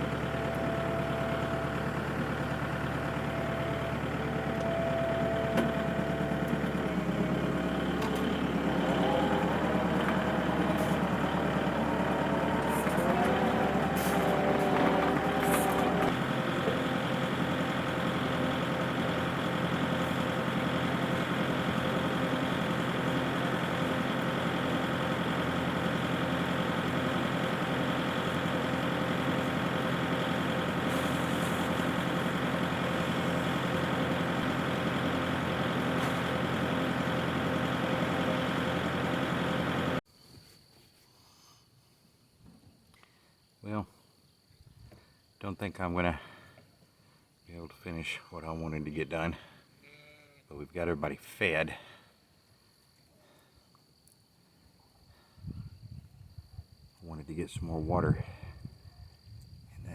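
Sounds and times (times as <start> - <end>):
vehicle engine running: 0.0 - 40.0.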